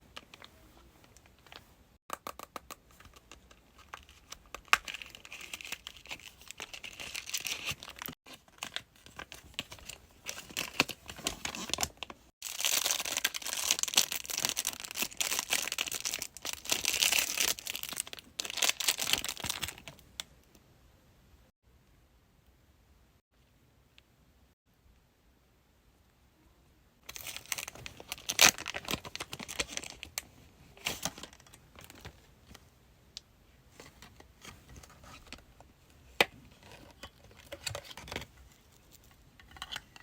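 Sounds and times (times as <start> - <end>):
wrapping torn and crumpled: 3.9 - 19.9, 27.1 - 30.2.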